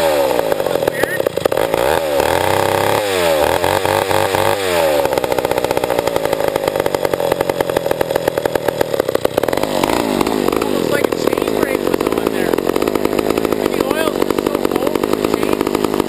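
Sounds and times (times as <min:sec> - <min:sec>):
chainsaw engine revving unevenly: 0:00.0 - 0:16.0.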